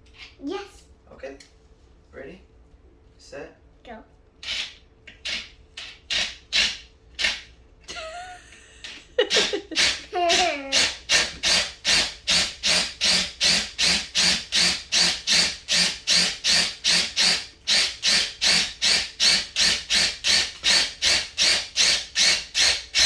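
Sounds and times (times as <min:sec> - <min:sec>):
power drill grinding coconut shell: 0:04.4 - 0:07.5, 0:09.3 - 0:23.0.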